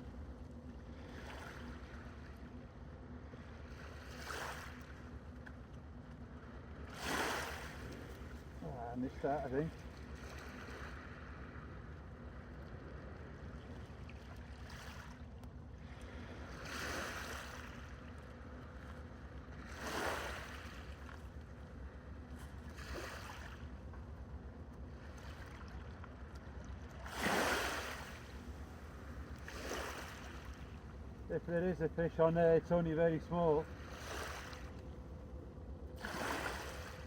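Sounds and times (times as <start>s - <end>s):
sea waves washing ashore: 3.4s - 5.0s, 6.8s - 11.8s, 15.8s - 18.1s, 19.6s - 21.2s, 22.4s - 23.7s, 26.9s - 37.0s
steady low rumble: 30.2s - 37.0s.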